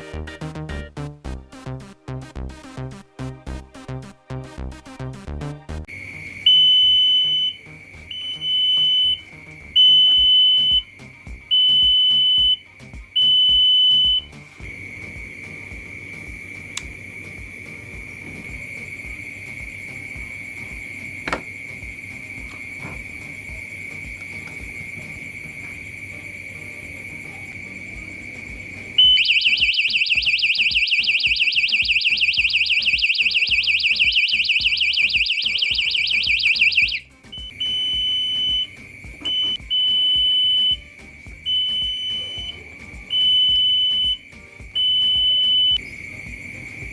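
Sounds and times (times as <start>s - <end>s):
fast warbling siren: 5.9s - 14.4s, 29.0s - 40.9s, 41.5s - 46.9s
steady high-pitched tone: 5.9s - 46.9s
high beeps: 6.4s - 14.3s, 29.0s - 46.9s.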